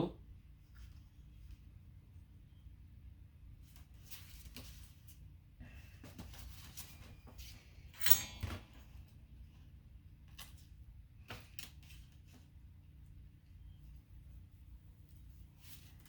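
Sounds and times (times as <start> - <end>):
low steady hum: 5.0 - 16.0
clicks and rustles of tools: 8.0 - 8.9.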